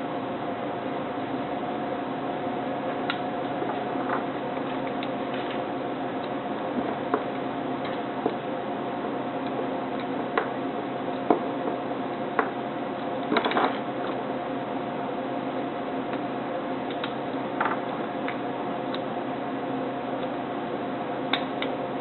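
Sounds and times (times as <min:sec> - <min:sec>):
steady background hum: 0:00.0 - 0:22.0
electrical tape clicks and rasps: 0:02.9 - 0:08.4, 0:09.4 - 0:14.2, 0:16.1 - 0:19.1.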